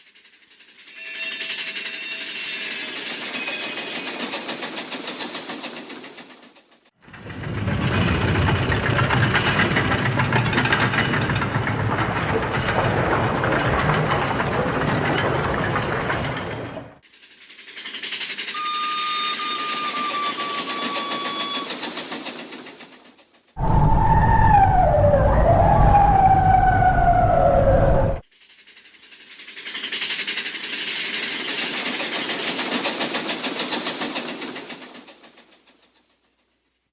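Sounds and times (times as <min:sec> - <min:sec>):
roller coaster rumbling on track: 0:02.3 - 0:17.0, 0:19.7 - 0:28.2, 0:30.4 - 0:36.2.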